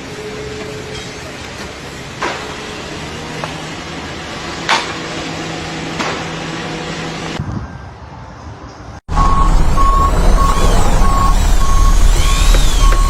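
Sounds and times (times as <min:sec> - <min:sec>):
machine hum: 0:09.1 - 0:13.0.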